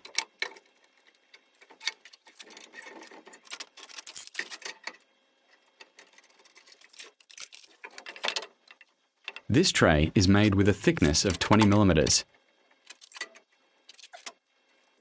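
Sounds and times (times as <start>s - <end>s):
clamps clicking and knocking: 0.0s - 9.5s.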